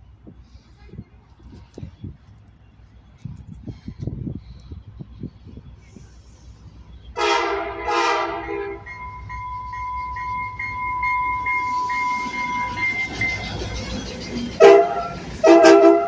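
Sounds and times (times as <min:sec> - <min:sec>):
train rumbling: 0:00.0 - 0:16.0
train horn blasts: 0:07.2 - 0:12.8, 0:14.6 - 0:16.0
steady high ringing tone: 0:08.8 - 0:15.2.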